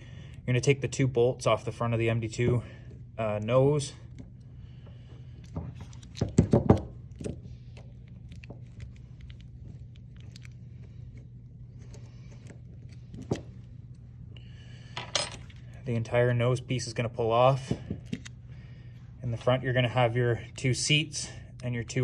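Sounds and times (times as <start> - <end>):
steady low hum: 0.0 - 22.0
metal tools clinking on metal: 15.0 - 15.6.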